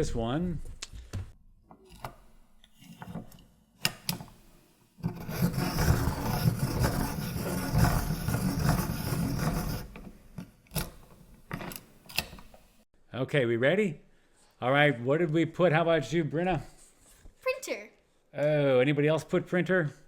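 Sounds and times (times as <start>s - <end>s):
pencil sharpener grinding: 5.0s - 10.1s.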